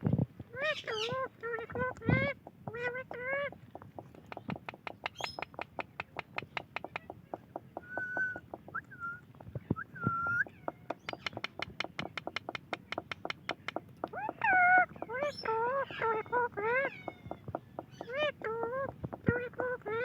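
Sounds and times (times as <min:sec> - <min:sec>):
parrot clicking: 0:04.2 - 0:07.1, 0:10.9 - 0:14.2
parrot whistles: 0:07.8 - 0:09.2, 0:09.8 - 0:10.5.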